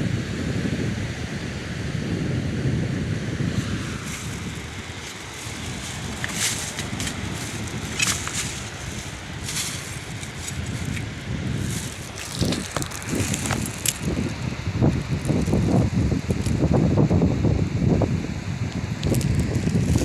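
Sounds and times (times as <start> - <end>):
wind buffeting microphone: 0.0 - 20.0
short crunching crackles: 3.6 - 16.7, 18.8 - 20.0.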